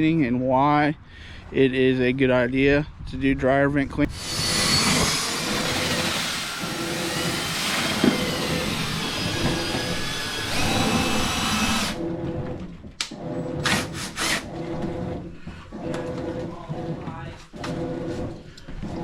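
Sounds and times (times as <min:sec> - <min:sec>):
power tool motor whining: 0:04.1 - 0:12.1.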